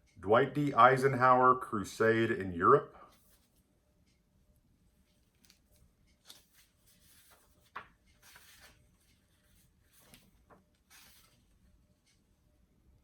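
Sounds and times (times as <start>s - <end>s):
book pages rustling: 3.1s - 3.6s, 5.0s - 12.2s.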